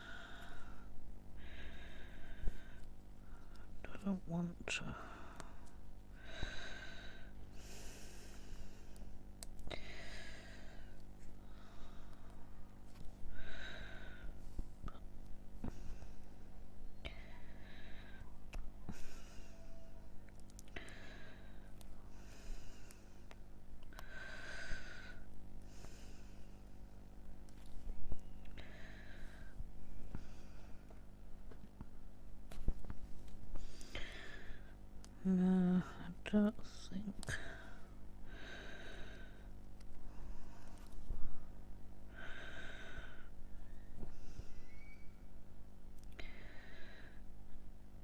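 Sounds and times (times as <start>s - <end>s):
person breathing out heavily: 0.0s - 2.9s, 9.7s - 12.4s, 24.0s - 26.6s, 33.5s - 34.8s, 37.3s - 40.9s, 42.1s - 43.3s
faint small clicks: 20.3s - 20.9s.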